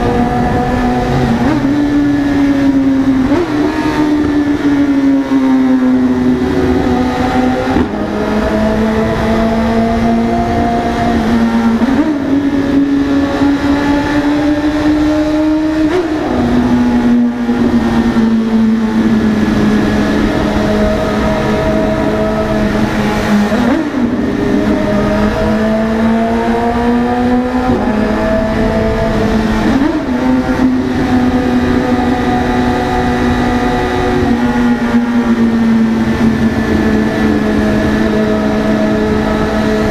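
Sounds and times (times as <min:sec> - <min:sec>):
motorcycle engine at high revs: 0:00.0 - 0:39.9.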